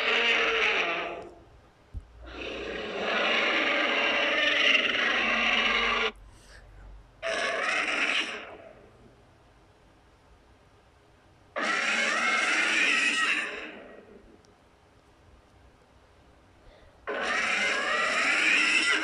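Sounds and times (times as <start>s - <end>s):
monster roar: 2.2s - 6.2s, 7.2s - 8.7s, 17.1s - 19.0s.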